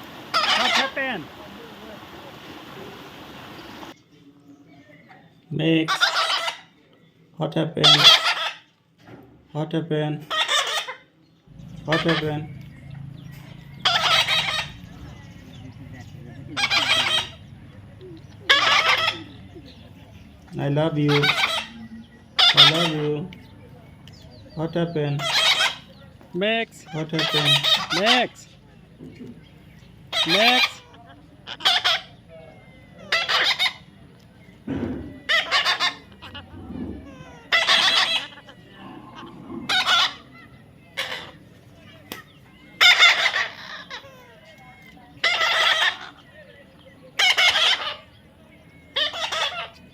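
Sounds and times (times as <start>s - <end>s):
parrot squawking: 0.0s - 4.0s, 5.9s - 6.7s, 7.8s - 8.7s, 10.2s - 19.8s, 20.9s - 23.1s, 25.1s - 26.0s, 26.8s - 28.5s, 30.1s - 34.0s, 35.0s - 41.5s, 42.1s - 46.4s, 47.2s - 48.2s, 48.8s - 49.9s.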